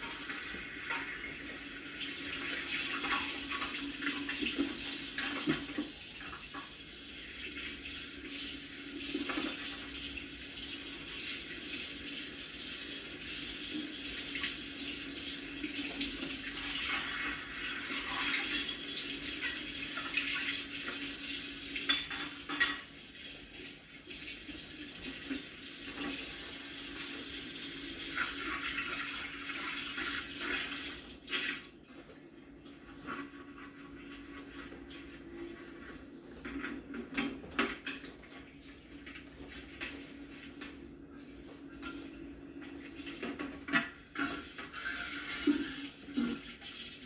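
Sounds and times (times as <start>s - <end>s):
dishware clinking: 21.8s - 22.9s.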